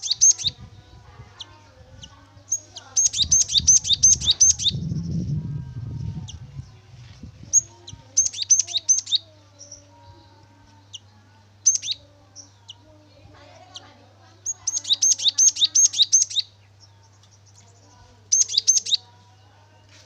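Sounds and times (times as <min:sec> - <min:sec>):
steady low hum: 0:00.0 - 0:14.8.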